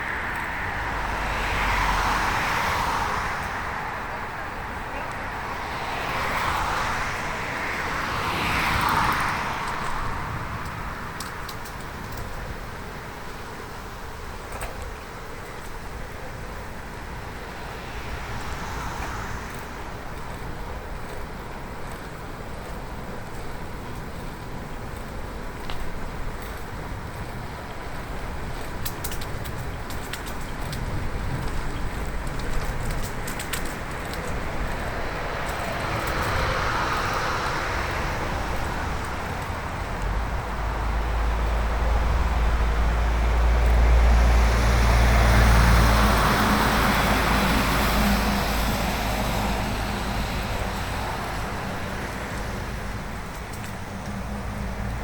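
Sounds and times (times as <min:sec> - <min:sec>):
bicycle tyres rumbling on road: 0:00.0 - 0:55.0
swell of passing noise: 0:31.2 - 0:55.0.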